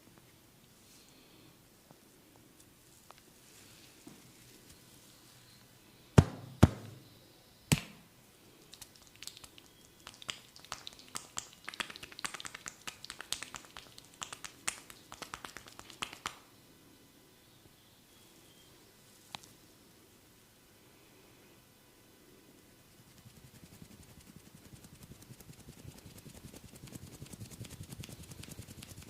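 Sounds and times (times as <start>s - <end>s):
hand smacks: 6.2s - 7.0s, 7.7s - 8.0s, 8.7s - 16.5s
quick light crackling clicks: 8.6s - 16.5s.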